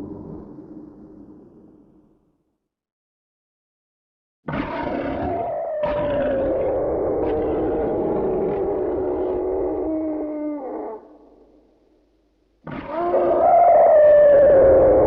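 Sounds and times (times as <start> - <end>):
low creature roar: 4.5 - 11.4, 12.7 - 15.0.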